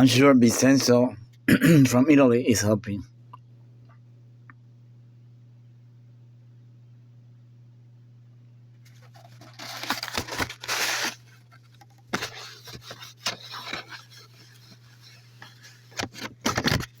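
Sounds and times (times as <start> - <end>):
low electrical hum: 0.0 - 17.0
objects rustling and scraping: 8.8 - 17.0.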